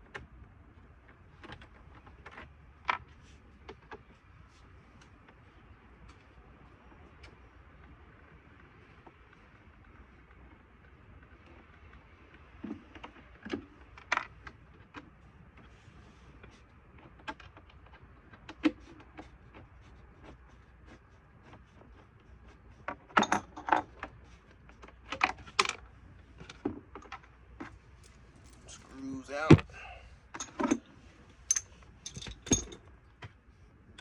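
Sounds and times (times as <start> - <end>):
screws and screwdriver clinking: 31.4 - 32.8.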